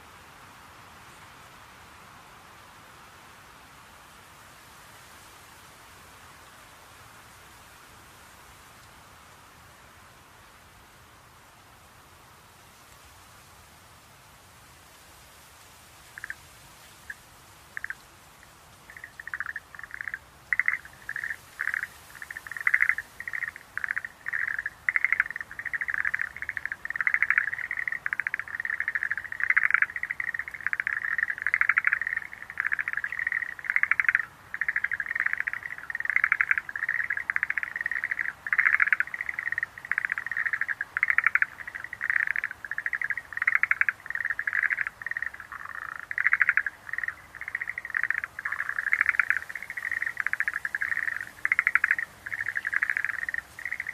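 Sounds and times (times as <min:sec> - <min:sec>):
frogs calling: 0:16.0 - 0:53.9.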